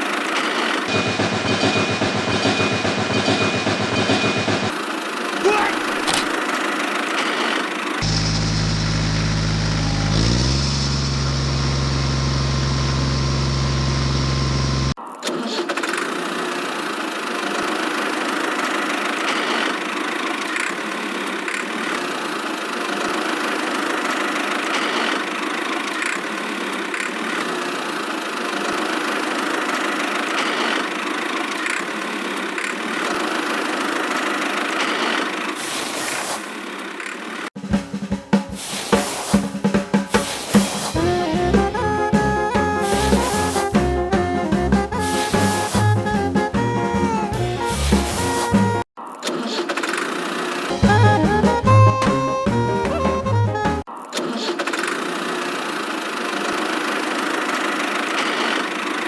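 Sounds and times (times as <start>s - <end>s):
engine-like mechanical hum: 8.0s - 15.0s
hissing grinding machine noise: 8.0s - 15.0s, 38.5s - 48.9s.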